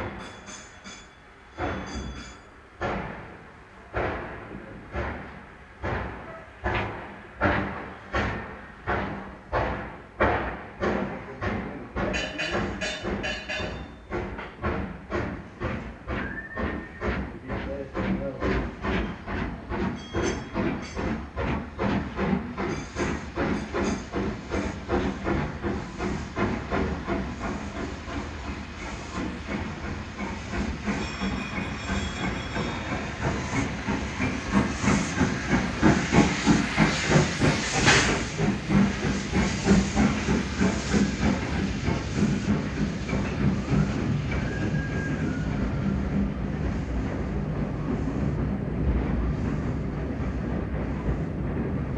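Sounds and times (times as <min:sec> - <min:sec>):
steady hiss of steam: 0:00.0 - 0:51.9
steam locomotive exhaust beats: 0:00.0 - 0:51.9
sharp burst of steam hiss: 0:21.9 - 0:51.8.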